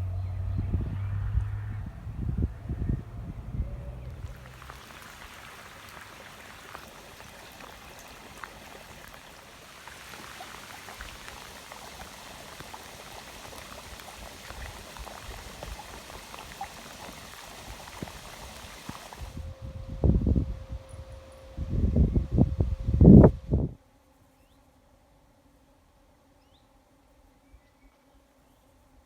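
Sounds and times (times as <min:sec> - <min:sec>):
water pattering and trickling: 0:03.9 - 0:19.4.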